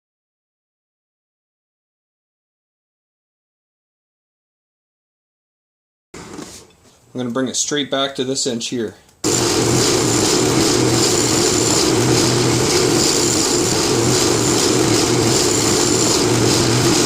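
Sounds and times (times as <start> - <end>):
wood lathe cutting wood: 9.2 - 17.0.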